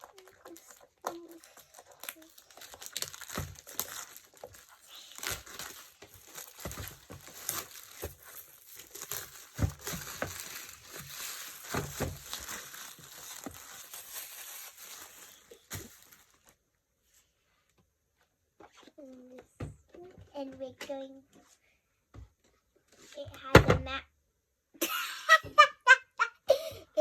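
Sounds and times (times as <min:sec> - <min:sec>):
packaging tearing: 0:00.0 - 0:16.5
packaging crinkling: 0:00.0 - 0:16.6.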